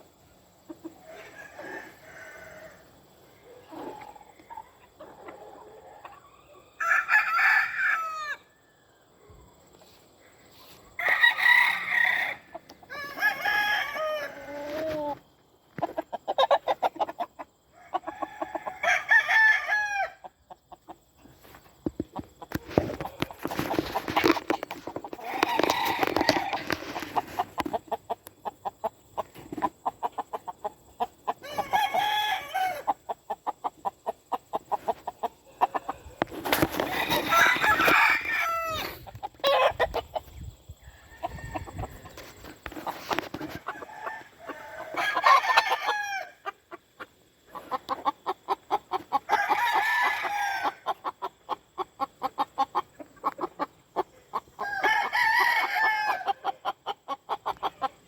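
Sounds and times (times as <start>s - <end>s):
roosters crowing: 1.0s - 4.6s, 5.3s - 8.8s, 11.0s - 15.2s, 16.3s - 20.4s, 22.7s - 27.7s, 31.1s - 33.1s, 35.4s - 46.7s, 49.1s - 51.1s, 54.5s - 56.8s.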